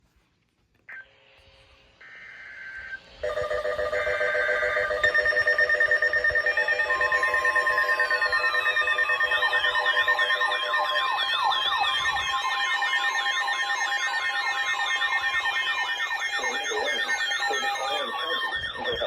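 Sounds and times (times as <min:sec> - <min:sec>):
falling siren-like sweeps: 0:00.9 - 0:19.0
steady and pulsing alarm tones: 0:00.9 - 0:19.0
screechy data bursts: 0:02.0 - 0:19.0.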